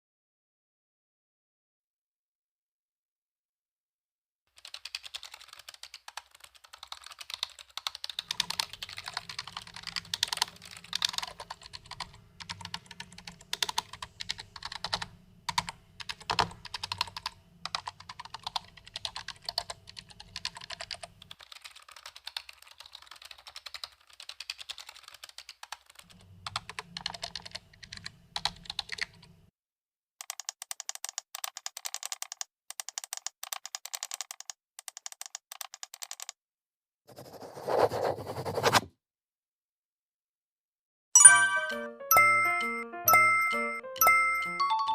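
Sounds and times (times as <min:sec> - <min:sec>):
keyboard typing clicks: 0:30.2 - 0:36.4.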